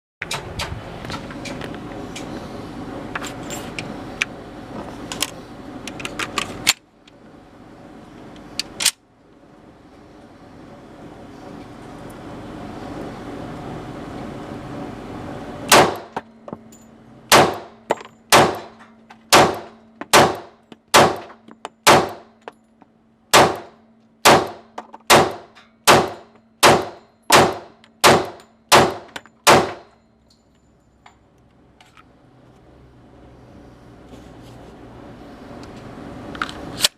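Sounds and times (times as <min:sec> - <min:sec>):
gunshots with ringing tail: 0:15.7 - 0:16.2, 0:17.3 - 0:22.2, 0:23.3 - 0:29.9.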